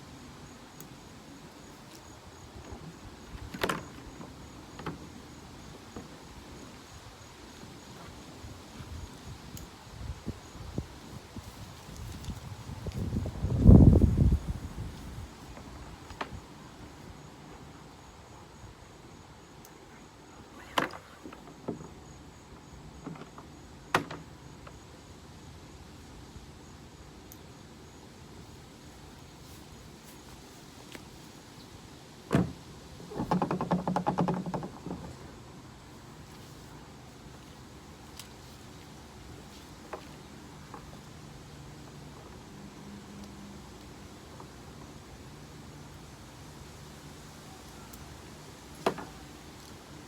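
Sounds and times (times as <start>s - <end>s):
kayak cart knocking: 32.3s - 35.2s.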